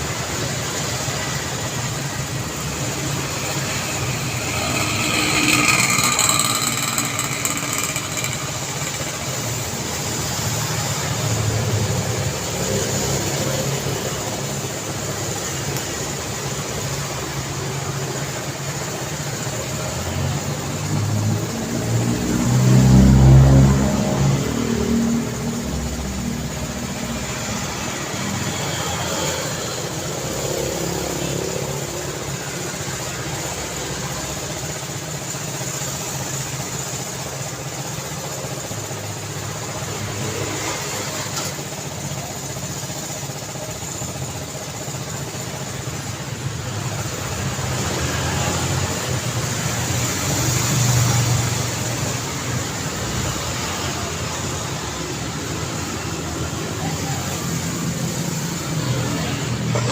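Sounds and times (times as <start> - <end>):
loud vehicle passing close: 0.0 - 15.4, 20.7 - 32.0
cars passing: 0.0 - 17.9, 20.4 - 34.3.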